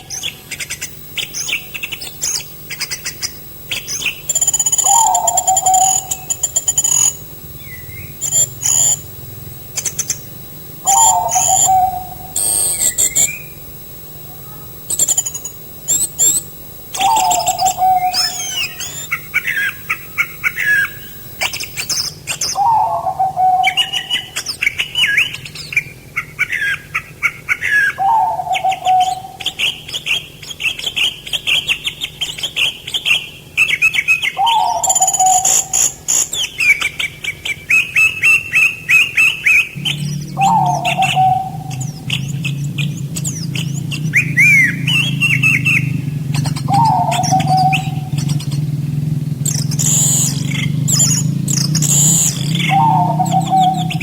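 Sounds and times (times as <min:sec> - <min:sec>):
low steady hum: 0:00.0 - 0:26.2, 0:39.5 - 0:54.0
falling bird call: 0:00.0 - 0:26.8, 0:27.5 - 0:54.0
songbirds chirping and warbling: 0:00.0 - 0:54.0.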